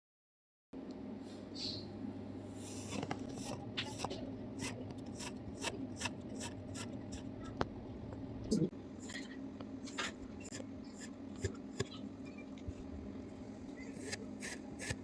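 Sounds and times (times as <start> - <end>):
blade cutting kinetic sand: 2.7 - 7.3, 14.0 - 15.0.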